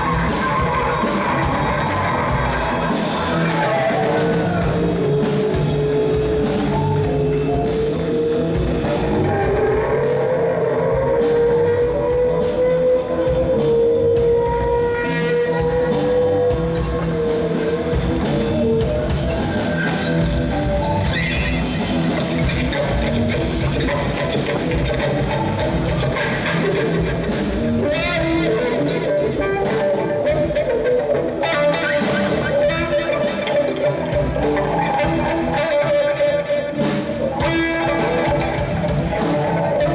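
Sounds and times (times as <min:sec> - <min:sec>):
rock music with guitar and drums: 0:00.0 - 0:39.9.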